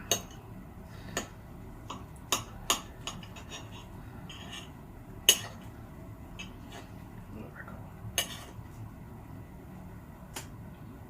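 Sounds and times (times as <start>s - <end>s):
knife and fork tapping a plate: 1.9s - 5.6s.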